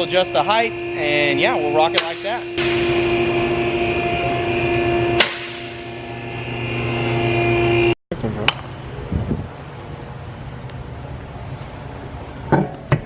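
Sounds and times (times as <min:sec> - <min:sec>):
loud machine drone: 0:00.0 - 0:12.5
sharp knock: 0:01.9 - 0:03.2, 0:05.2 - 0:05.8.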